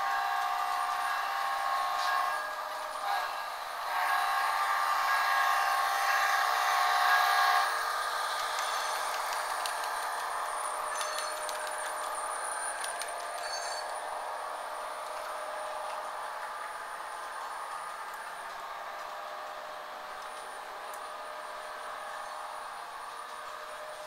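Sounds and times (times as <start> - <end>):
diesel train horn chord: 0.0 - 7.8
train clicking on track: 0.0 - 24.0.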